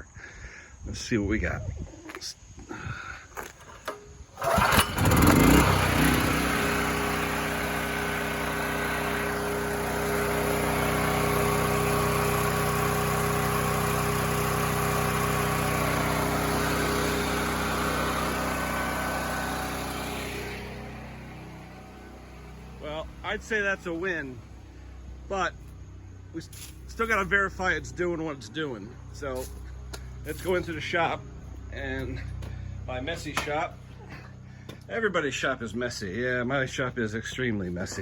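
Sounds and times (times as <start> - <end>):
small gasoline engine running: 3.6 - 25.3.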